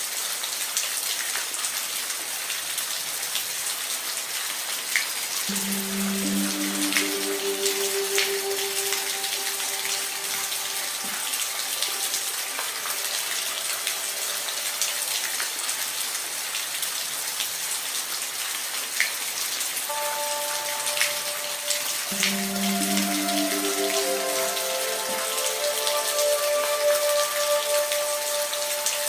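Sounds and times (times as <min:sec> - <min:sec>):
steady rain falling: 0:00.0 - 0:29.0
soft sustained music tones: 0:05.5 - 0:16.8, 0:19.9 - 0:29.0.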